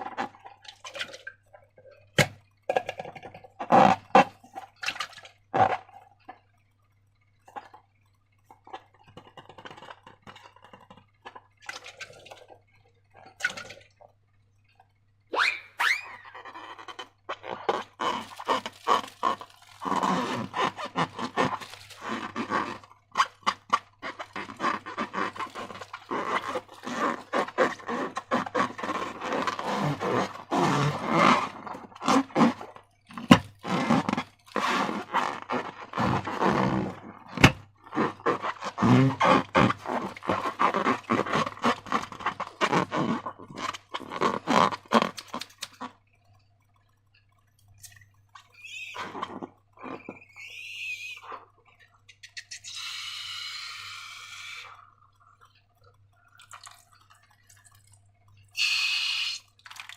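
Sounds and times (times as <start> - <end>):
slime squelching: 15.8 - 46.2, 47.2 - 52.8, 53.4 - 59.9
sticky clicks and pops: 39.6 - 46.0.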